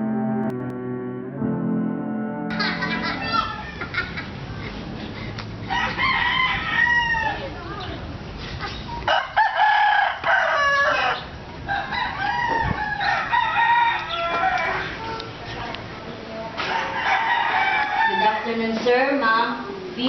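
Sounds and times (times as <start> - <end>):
rooster crowing: 5.7 - 7.5, 9.1 - 14.9, 16.6 - 18.7.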